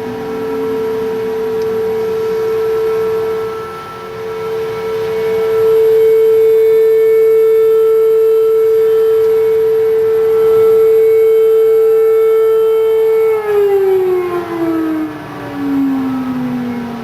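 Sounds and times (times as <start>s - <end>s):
tornado siren wailing: 0.0s - 17.0s.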